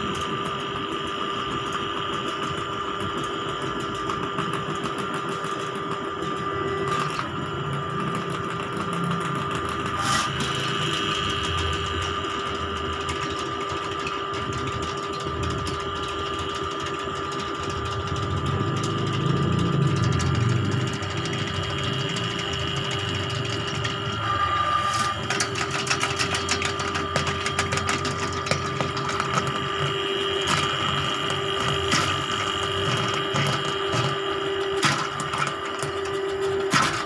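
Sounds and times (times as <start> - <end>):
drain-cleaning machine motor whine: 0.0 - 37.0
rapid clicking rattles: 10.5 - 24.2.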